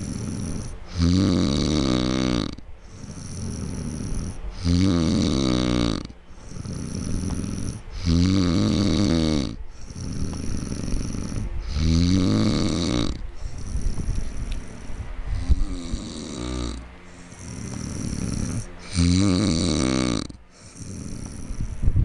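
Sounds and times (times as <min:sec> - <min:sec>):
breathy breathing: 0:00.0 - 0:01.0, 0:02.6 - 0:04.7, 0:06.0 - 0:08.2, 0:09.5 - 0:12.0, 0:13.0 - 0:19.0, 0:20.3 - 0:22.0
man snoring: 0:00.0 - 0:21.8.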